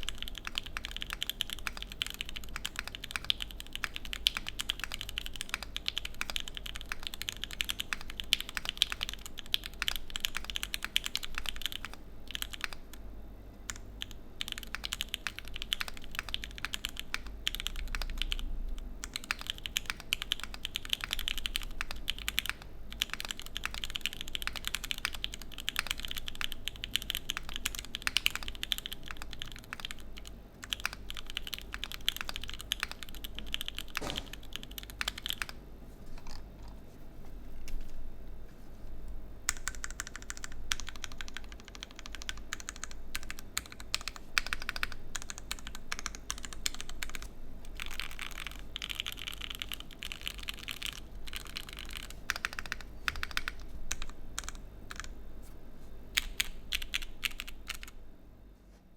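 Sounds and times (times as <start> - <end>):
mechanical keyboard typing: 0.0 - 13.0, 13.7 - 35.6, 39.5 - 55.2, 56.1 - 58.0.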